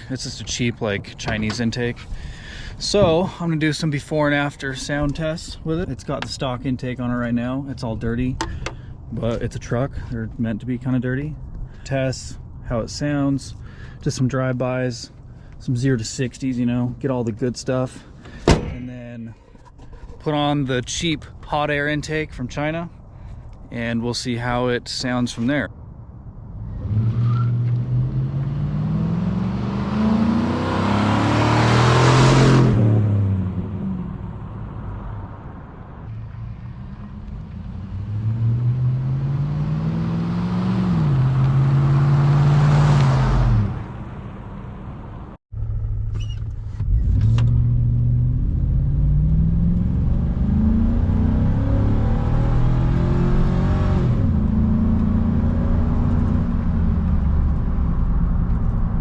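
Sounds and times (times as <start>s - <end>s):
truck engine accelerating hard: 26.6s - 35.6s, 36.4s - 45.2s, 46.8s - 59.0s.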